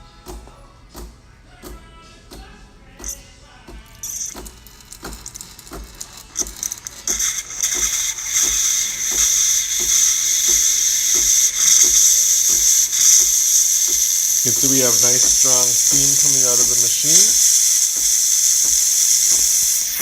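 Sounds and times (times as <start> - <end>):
regular ticking: 1.0 - 20.0
steam wand hissing: 3.0 - 20.0.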